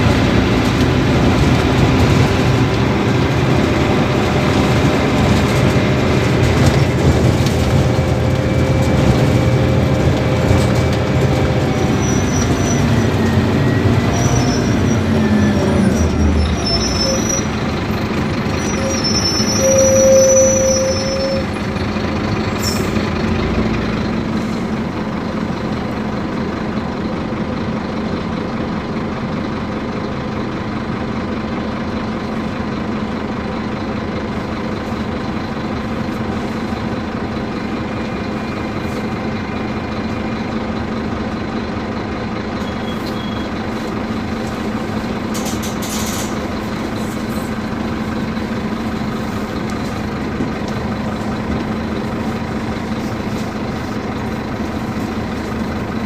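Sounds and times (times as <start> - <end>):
bus diesel engine running: 0.0 - 56.0
air brake hisses: 45.4 - 46.4.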